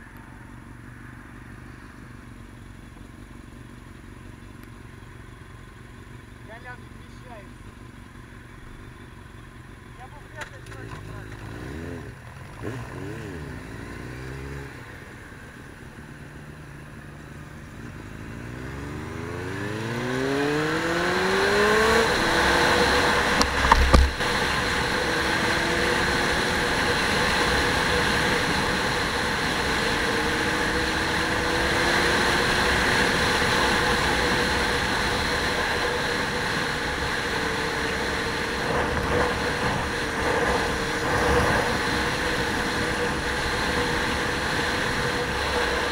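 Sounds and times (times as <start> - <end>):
road and wind noise: 0.0 - 45.9
vehicle engine revving: 9.9 - 16.0, 17.8 - 45.9.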